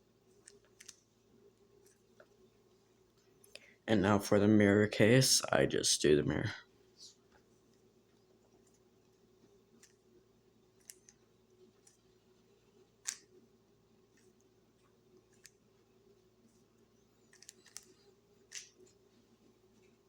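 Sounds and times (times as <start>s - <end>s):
puzzle cube clicking: 17.3s - 18.7s.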